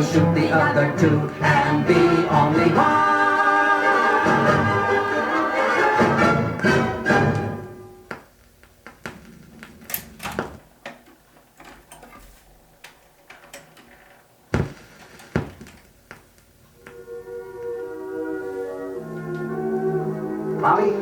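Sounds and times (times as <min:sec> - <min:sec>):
faint record hiss: 0:00.0 - 0:21.0
record clicks and pops: 0:08.1 - 0:11.3.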